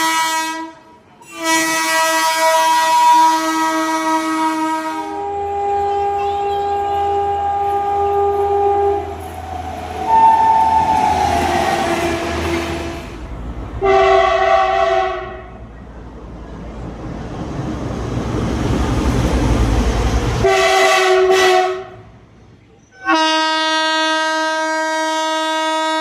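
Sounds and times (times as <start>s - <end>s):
locomotive horn blasts: 0.0s - 9.2s, 10.0s - 13.2s, 13.8s - 15.6s, 20.4s - 22.1s, 23.0s - 26.0s
passing train rumble: 0.0s - 26.0s.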